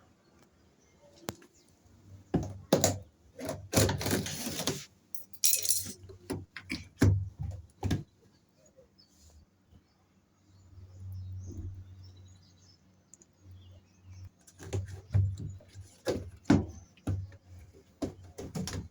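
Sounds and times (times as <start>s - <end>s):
clicks and clattering: 3.7s - 6.9s.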